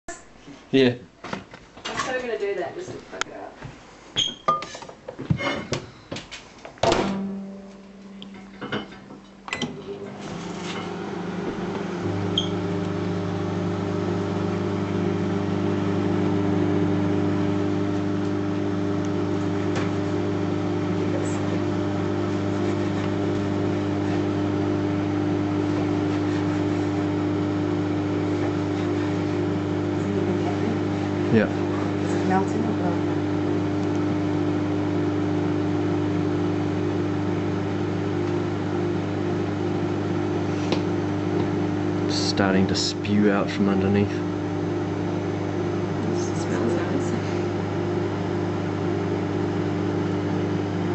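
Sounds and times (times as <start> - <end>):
microwave humming: 4.2 - 50.9
microwave keypad beeps: 12.3 - 12.6.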